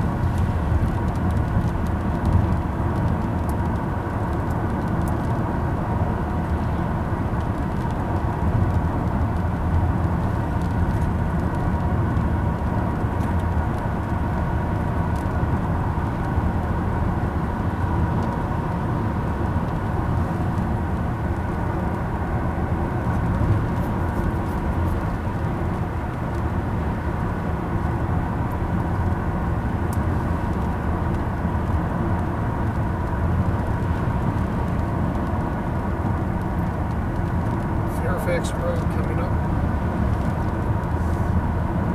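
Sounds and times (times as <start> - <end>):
car road and engine noise: 0.0 - 41.9.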